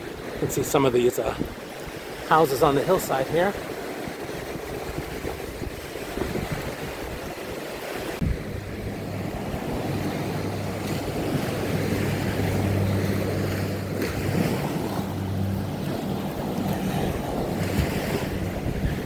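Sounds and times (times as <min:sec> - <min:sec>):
ocean surf washing on shore: 0:00.0 - 0:19.0
wind buffeting microphone: 0:00.0 - 0:19.0
steady low drone: 0:08.2 - 0:19.0.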